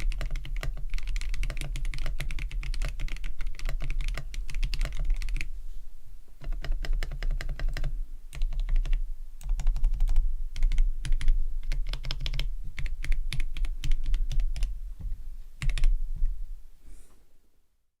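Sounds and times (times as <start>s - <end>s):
mechanical keyboard typing: 0.0s - 5.5s, 6.4s - 14.7s, 15.6s - 16.0s.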